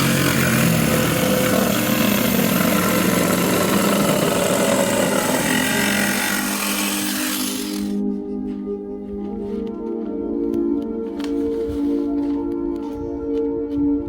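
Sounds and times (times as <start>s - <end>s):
woodworking power tool whirring: 0.0s - 8.0s.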